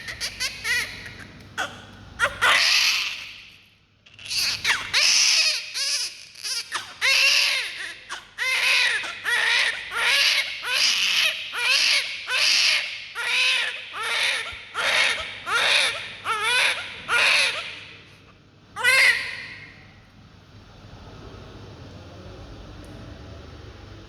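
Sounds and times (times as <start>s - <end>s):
newborn baby crying: 0.0s - 3.4s, 4.1s - 17.9s, 18.8s - 19.7s.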